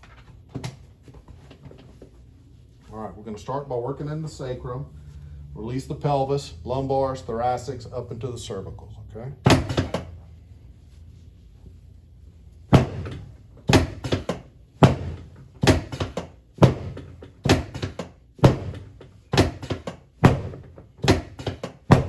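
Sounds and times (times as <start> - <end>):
sharp thuds of spinal adjustment: 9.5 - 10.2, 12.7 - 22.0.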